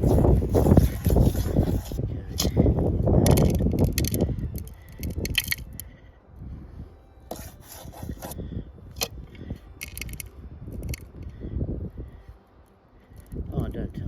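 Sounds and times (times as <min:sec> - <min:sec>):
gravelly dirt scraping: 0:00.0 - 0:05.7, 0:07.3 - 0:08.4.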